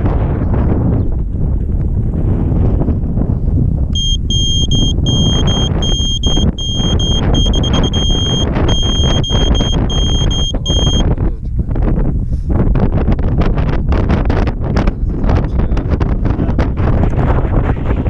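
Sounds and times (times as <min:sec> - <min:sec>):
wind rumble on microphone: 0:00.0 - 0:18.0
high-pitched electronic buzzer beeping: 0:04.0 - 0:11.1.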